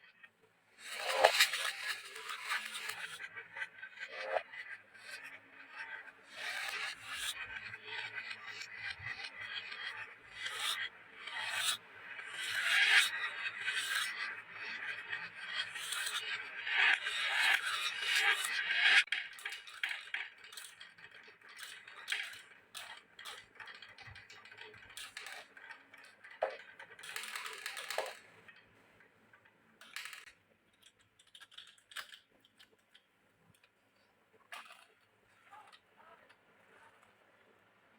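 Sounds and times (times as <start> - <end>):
marbles rolling scrapes: 0.8 - 28.6, 29.8 - 30.4.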